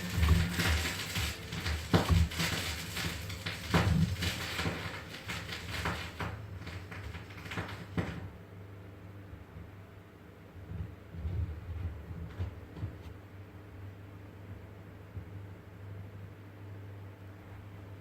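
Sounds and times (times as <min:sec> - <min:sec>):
steady hum: 0:00.0 - 0:09.4.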